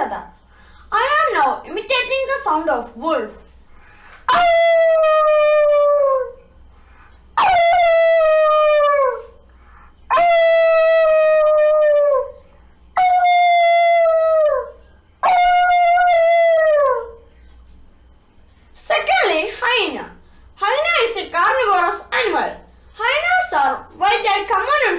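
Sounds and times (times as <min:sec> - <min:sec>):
child imitating wolf howl: 0:04.3 - 0:06.4, 0:07.4 - 0:09.4, 0:10.1 - 0:12.4, 0:13.0 - 0:17.3.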